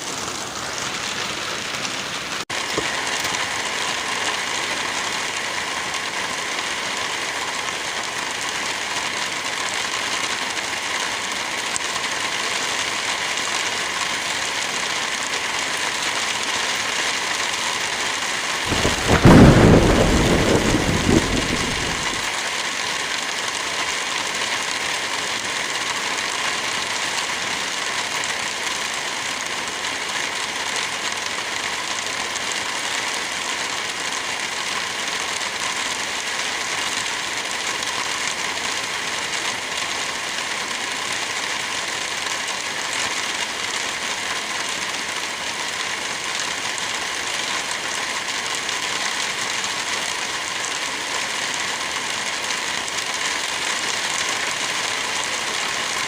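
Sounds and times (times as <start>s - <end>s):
light rain falling: 0.0s - 56.0s
wind blowing through forest: 18.0s - 25.1s.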